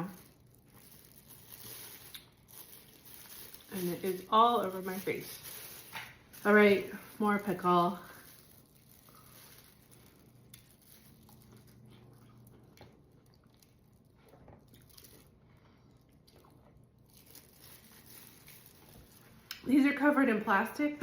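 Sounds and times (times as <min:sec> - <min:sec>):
chewing pickle: 0:00.0 - 0:03.7, 0:08.6 - 0:19.6
soft crunches: 0:00.0 - 0:19.6.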